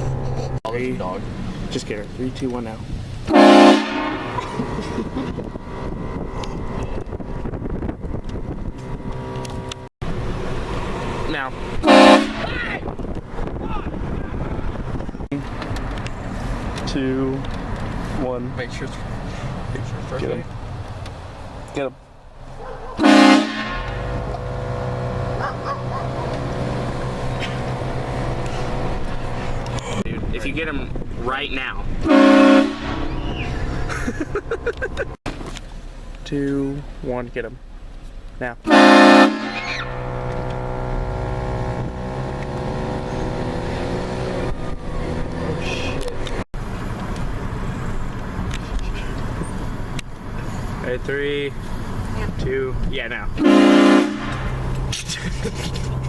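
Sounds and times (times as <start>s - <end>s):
low engine hum: 0.0s - 3.3s, 3.9s - 56.0s
train horn blasting: 3.3s - 4.4s, 11.8s - 12.6s, 23.0s - 25.4s, 32.0s - 33.4s, 38.7s - 42.1s, 53.4s - 54.6s.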